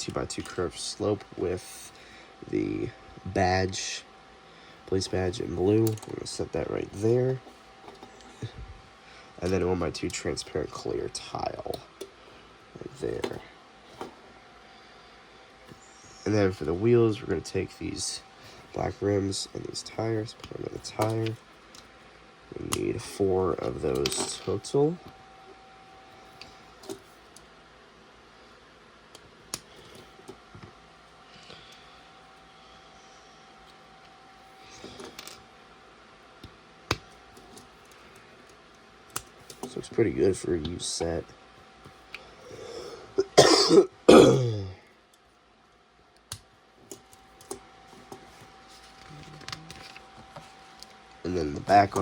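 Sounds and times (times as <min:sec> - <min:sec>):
man clearing throat: 0:43.2 - 0:44.8
man coughing: 0:43.2 - 0:44.8.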